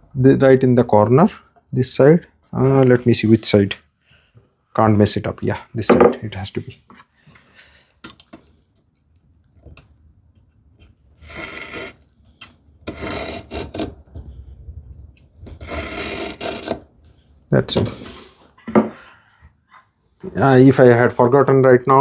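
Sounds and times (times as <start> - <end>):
knife scoring wood: 10.8 - 14.0, 15.5 - 16.9.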